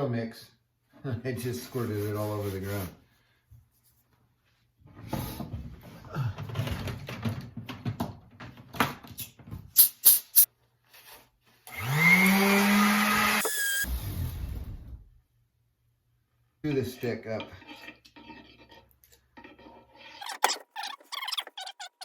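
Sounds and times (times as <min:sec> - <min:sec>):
small electric motor whine: 0:11.7 - 0:14.2
rubbing and handling axe handle: 0:16.7 - 0:22.0.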